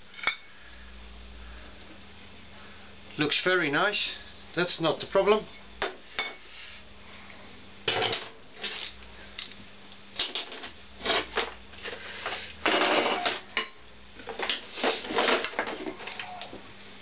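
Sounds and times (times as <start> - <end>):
metal tools clinking and scraping: 7.9 - 16.3.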